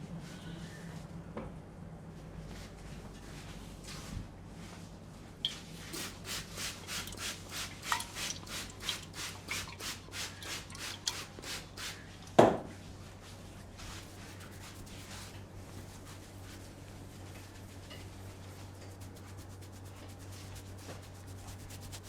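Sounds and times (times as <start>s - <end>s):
hands rubbing hair and scalp: 13.8s - 16.7s, 18.4s - 22.0s.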